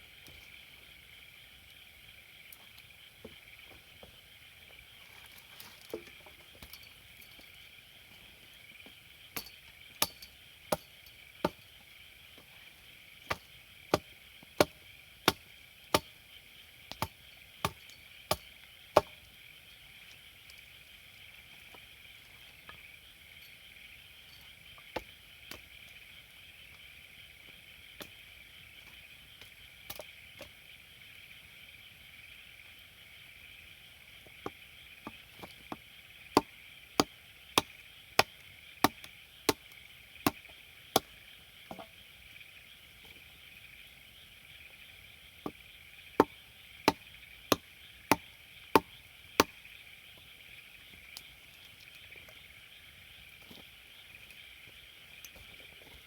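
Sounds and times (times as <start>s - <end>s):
night insects chirring: 0.0s - 56.0s
wood being chopped: 9.4s - 11.6s, 13.3s - 16.1s, 16.9s - 19.2s, 36.4s - 41.1s, 46.2s - 49.6s.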